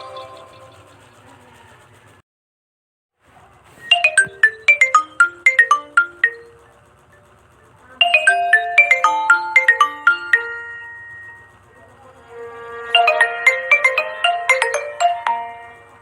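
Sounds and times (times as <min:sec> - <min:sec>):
smartphone ringtone: 0:00.0 - 0:00.8, 0:03.9 - 0:06.6, 0:08.0 - 0:16.0.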